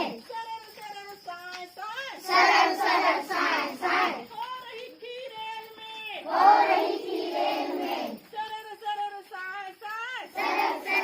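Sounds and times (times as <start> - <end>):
children singing in chorus: 2.2 - 4.2, 6.3 - 8.2, 10.4 - 11.0.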